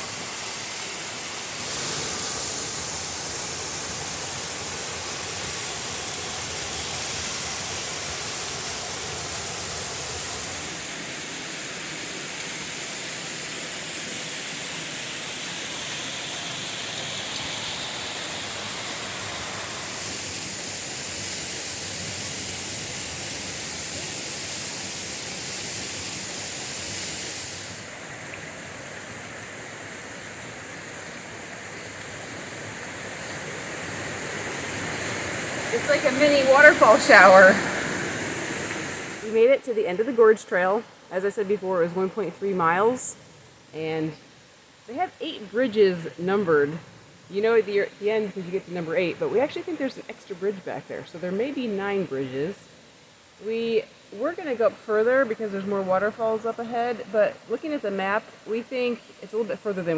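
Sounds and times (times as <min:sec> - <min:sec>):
waterfall rushing: 0:00.0 - 0:43.0.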